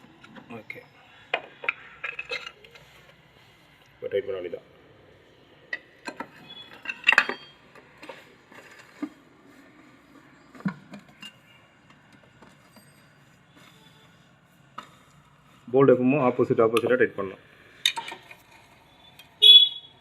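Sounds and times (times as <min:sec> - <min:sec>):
metal tools clinking on bolts: 0:01.6 - 0:02.8, 0:06.0 - 0:07.6.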